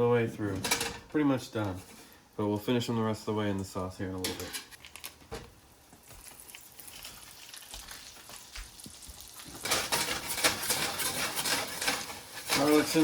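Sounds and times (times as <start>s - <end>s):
faint crackle of pan: 4.2s - 13.0s
garlic sizzling in a pan: 5.6s - 13.0s.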